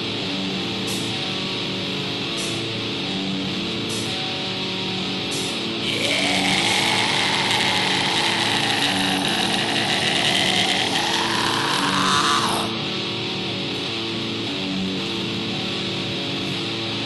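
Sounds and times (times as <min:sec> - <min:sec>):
distorted guitar riffing: 0:00.0 - 0:17.0
harsh vocal shriek: 0:05.8 - 0:12.8.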